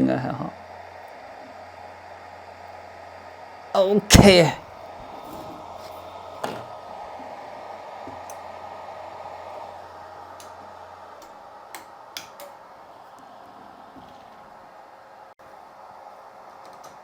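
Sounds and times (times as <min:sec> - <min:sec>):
hot air station blowing: 0:03.8 - 0:11.6.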